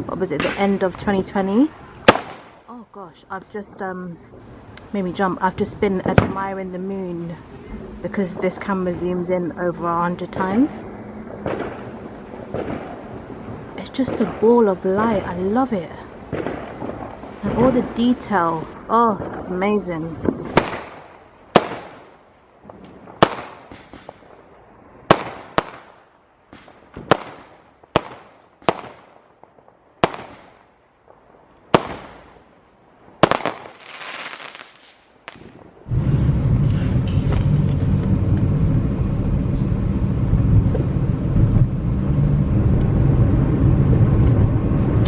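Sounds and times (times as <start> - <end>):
fireworks bangs: 0.0 - 2.7, 3.4 - 39.8
fireworks crackle: 0.0 - 2.7, 3.5 - 39.8
loud steady rumbling: 0.0 - 25.1, 35.4 - 45.0.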